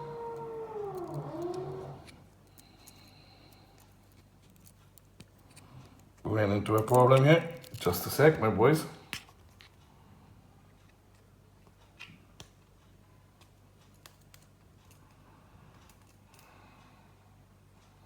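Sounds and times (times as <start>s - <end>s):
small objects clicking: 6.7s - 8.1s.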